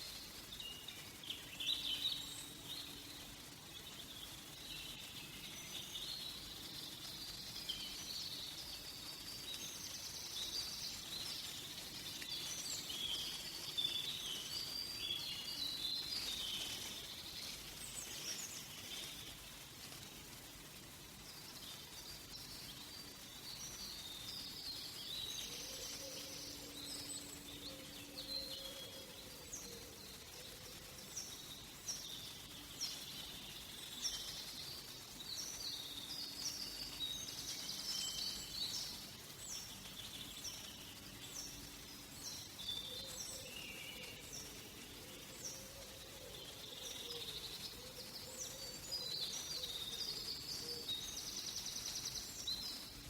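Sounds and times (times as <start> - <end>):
faint steady background: 0.0 - 53.0
birds singing and calling: 21.3 - 53.0.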